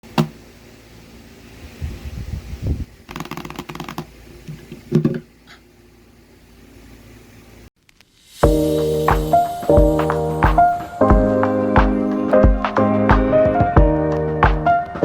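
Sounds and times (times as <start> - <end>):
low rumbling: 1.5 - 3.1.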